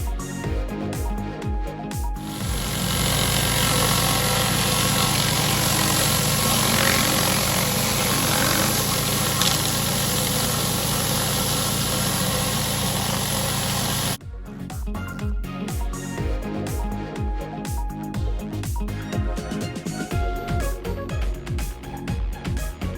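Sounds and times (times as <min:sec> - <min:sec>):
high-pressure water spray hiss: 0:02.2 - 0:14.2
pressure washer engine hum: 0:02.2 - 0:14.2.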